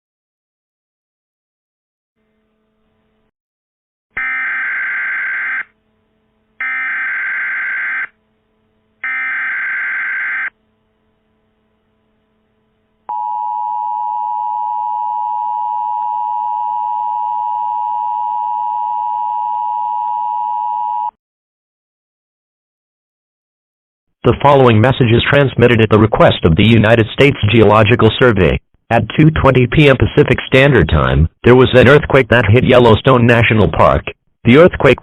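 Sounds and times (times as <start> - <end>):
two-tone attention signal: 13.1 - 21.1.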